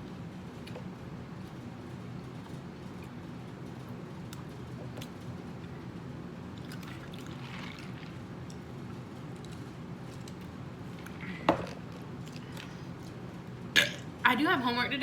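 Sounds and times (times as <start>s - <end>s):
soft chewing: 6.6s - 13.6s.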